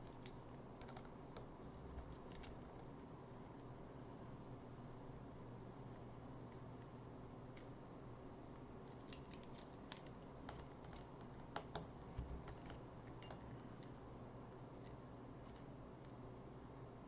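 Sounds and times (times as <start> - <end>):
small tools tapping metal parts: 13.0 - 13.6.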